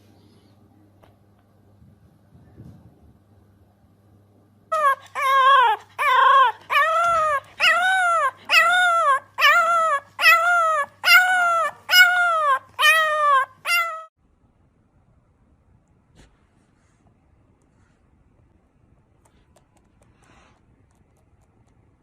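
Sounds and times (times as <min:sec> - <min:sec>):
dog howling: 0:04.7 - 0:14.1.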